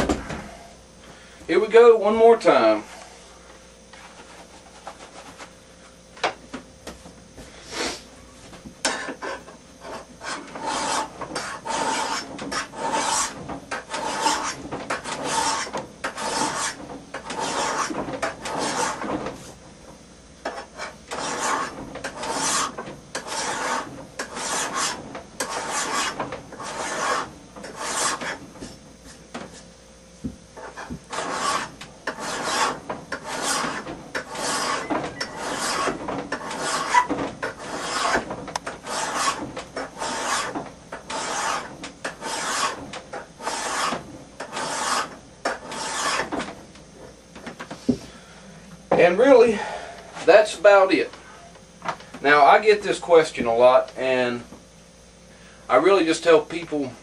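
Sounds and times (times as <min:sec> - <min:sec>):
file rasping on steel: 0:08.8 - 0:19.1, 0:20.4 - 0:29.7, 0:30.6 - 0:46.4.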